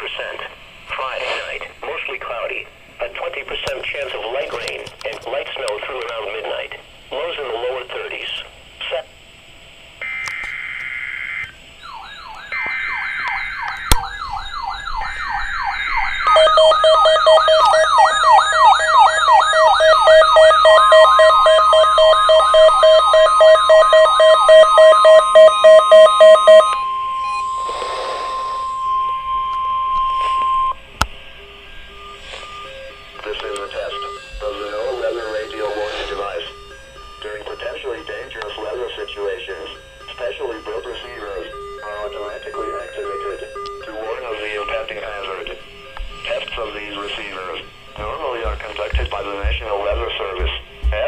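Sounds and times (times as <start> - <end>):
warbling siren: 10.0 - 49.1
steady warning alarm tone: 10.0 - 51.0
rapid pulsing beep: 11.8 - 51.0
screeching data bursts: 15.1 - 51.0.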